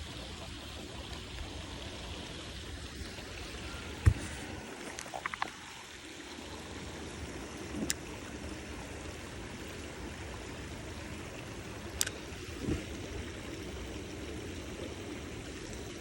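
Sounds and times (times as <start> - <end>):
creek water flowing: 0.0 - 16.0.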